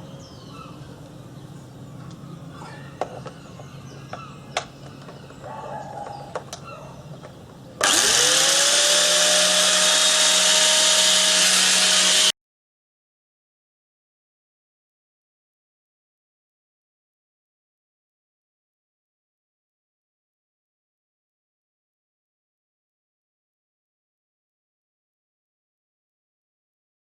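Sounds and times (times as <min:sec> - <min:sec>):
grinder motor whining: 0:07.8 - 0:12.3.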